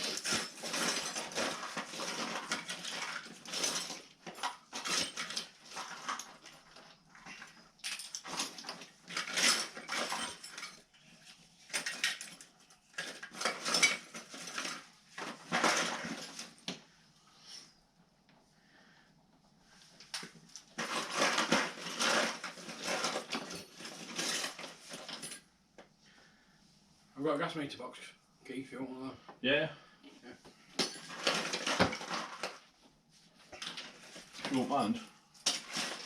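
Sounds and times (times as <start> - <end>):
metal tools clinking and rattling: 0.0 - 16.5, 20.2 - 25.5, 30.7 - 32.6, 33.6 - 36.0.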